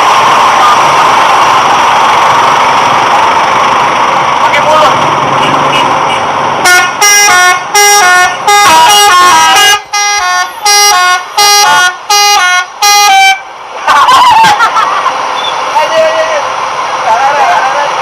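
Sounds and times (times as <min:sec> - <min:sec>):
multi-tone air horn tune: 0:05.7 - 0:13.4
voices: 0:13.7 - 0:18.0.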